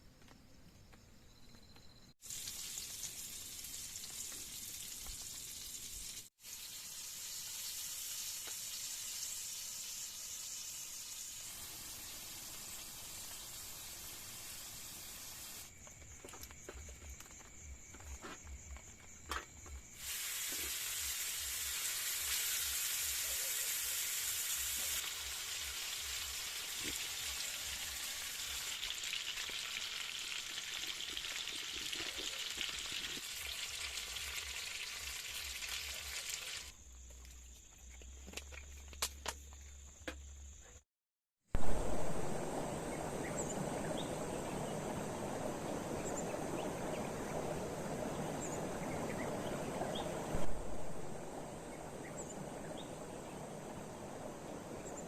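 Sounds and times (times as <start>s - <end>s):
heavy rain hissing: 2.2s - 15.7s, 20.0s - 36.7s, 41.6s - 55.0s.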